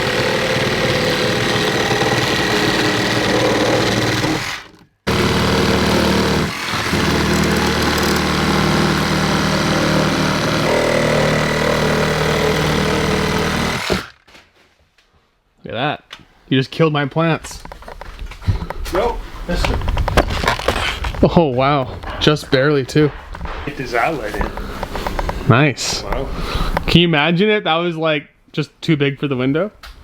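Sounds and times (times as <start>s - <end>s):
reciprocating saw cutting wood: 0.0s - 14.2s.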